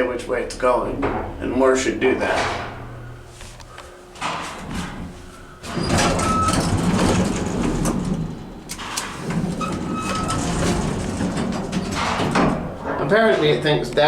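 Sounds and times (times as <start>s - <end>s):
elevator doors rattling shut: 4.2s - 13.6s.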